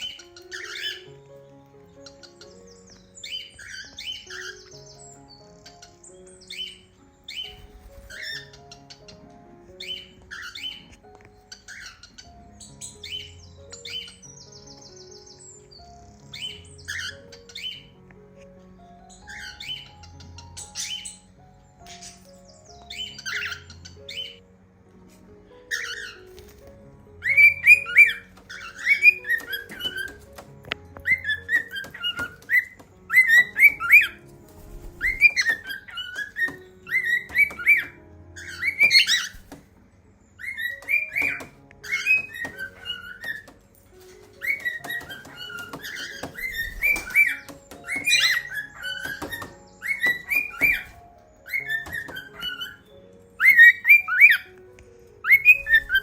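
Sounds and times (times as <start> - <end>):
cockatiels whistling and chirping: 0.0 - 1.1, 2.2 - 5.8, 6.5 - 9.1, 9.8 - 14.1, 19.2 - 21.2, 21.9 - 24.4, 25.7 - 26.2, 27.2 - 39.6, 40.4 - 43.6, 44.2 - 54.5, 55.2 - 56.0.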